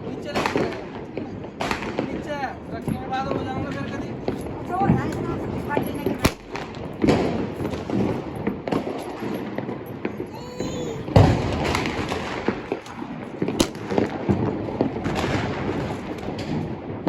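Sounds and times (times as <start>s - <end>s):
continuous crackling: 0.0s - 17.0s.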